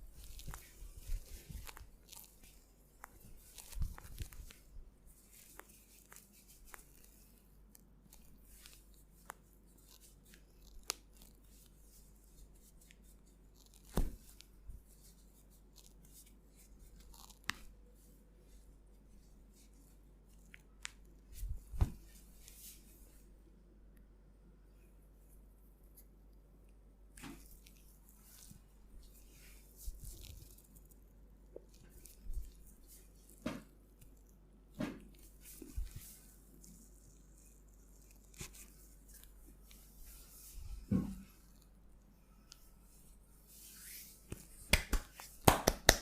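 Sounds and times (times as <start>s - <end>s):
hands rubbing skin: 0.1s - 7.4s, 35.1s - 40.8s, 42.5s - 46.0s.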